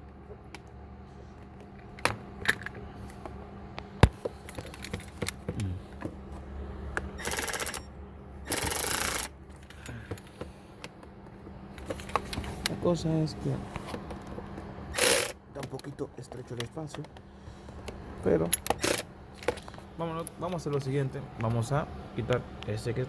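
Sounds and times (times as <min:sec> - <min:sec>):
ratchet clicking: 0:07.2 - 0:07.8, 0:08.5 - 0:09.3, 0:14.9 - 0:15.4, 0:18.6 - 0:19.1.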